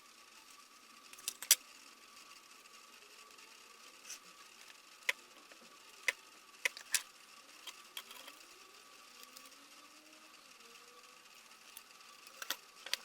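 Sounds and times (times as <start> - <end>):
faint steady hum: 0.0 - 13.0
small hard parts clicking: 1.1 - 1.6, 4.6 - 8.4, 11.5 - 13.0.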